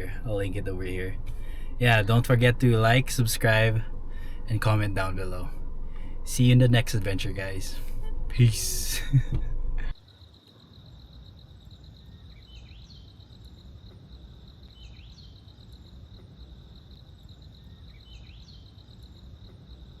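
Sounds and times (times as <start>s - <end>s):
wind noise rumble: 0.0s - 10.0s.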